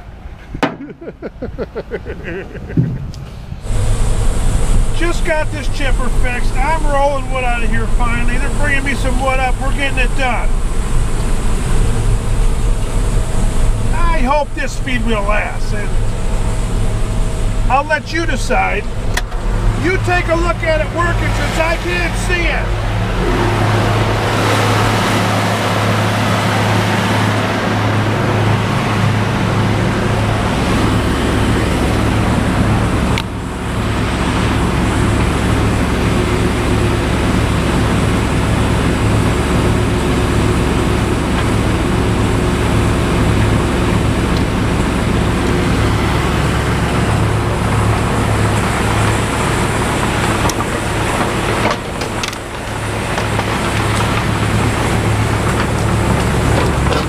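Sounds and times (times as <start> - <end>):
wood chipper engine drone: 0.0 - 57.0.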